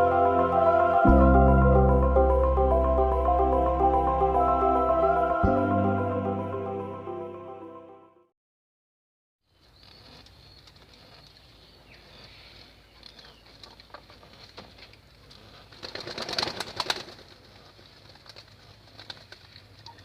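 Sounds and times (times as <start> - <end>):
pigeons: 9.8 - 20.0
wings fluttering: 15.5 - 20.0.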